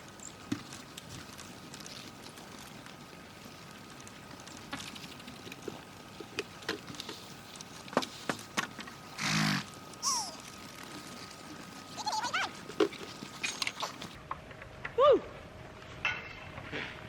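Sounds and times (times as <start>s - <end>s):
horse blowing through nostrils: 9.2s - 9.7s.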